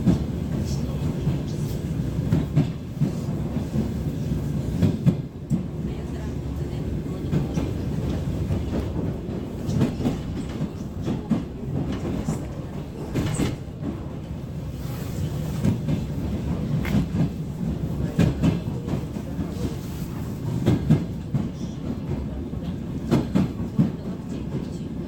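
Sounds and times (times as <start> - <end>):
train wheels rumbling on rail: 0.0 - 25.0.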